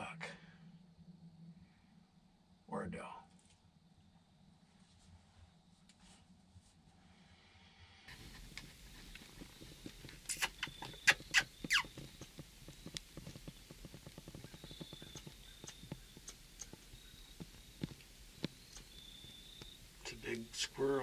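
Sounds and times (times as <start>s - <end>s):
faint ticking: 8.1s - 21.0s
rustling: 8.1s - 21.0s
squirrel barking: 8.1s - 21.0s.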